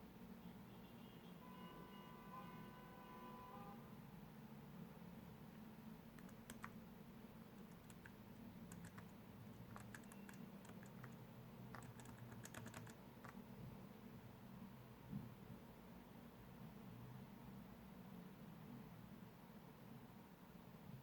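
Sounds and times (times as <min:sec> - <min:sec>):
low steady hum: 0:02.7 - 0:16.8
keyboard keystrokes: 0:06.1 - 0:06.8, 0:07.6 - 0:13.4.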